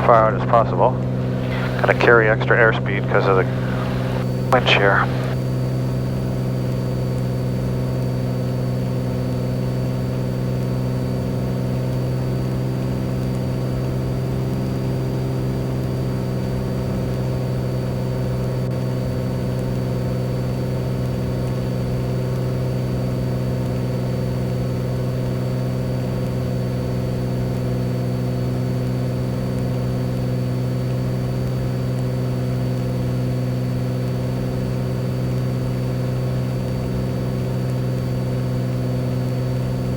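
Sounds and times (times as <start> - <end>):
faint high whine: 0.0 - 7.4
propeller plane engine droning: 0.0 - 39.9.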